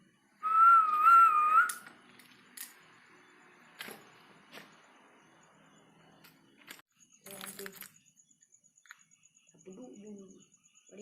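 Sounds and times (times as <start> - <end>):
person whistling: 0.4 - 1.8.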